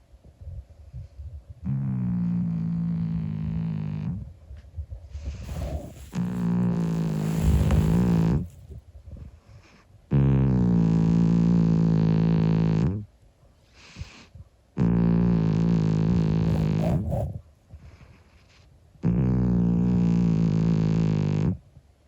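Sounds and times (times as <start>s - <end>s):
cat snoring: 5.2s - 8.7s, 14.8s - 21.6s.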